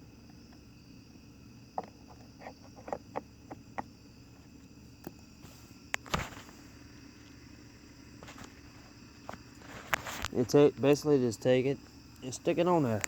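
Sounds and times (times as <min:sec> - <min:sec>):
hard parts clicking and knocking: 0:01.8 - 0:03.9.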